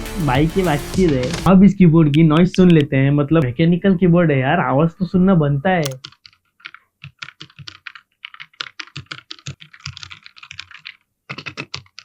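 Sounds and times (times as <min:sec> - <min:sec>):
mechanical keyboard typing: 0:05.8 - 0:12.0.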